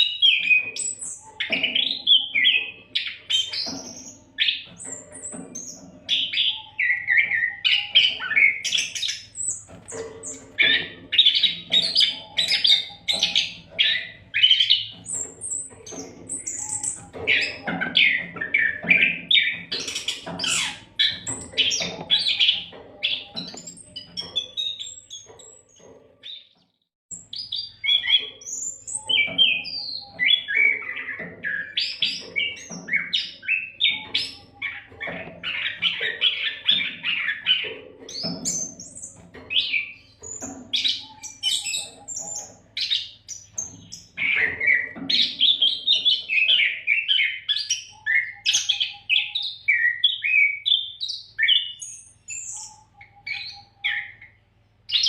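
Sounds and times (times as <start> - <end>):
songbird singing whistles and trills: 27.1 - 55.0.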